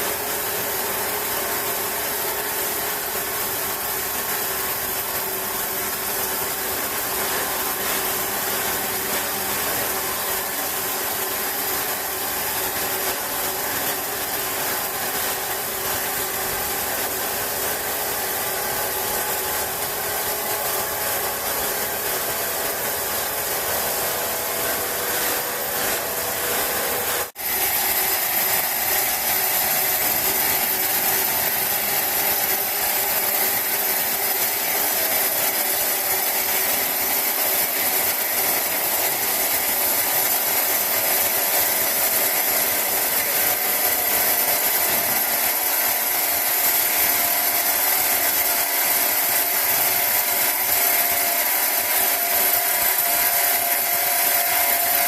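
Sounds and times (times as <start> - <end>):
sawmill saw cutting wood: 0.0 - 55.0.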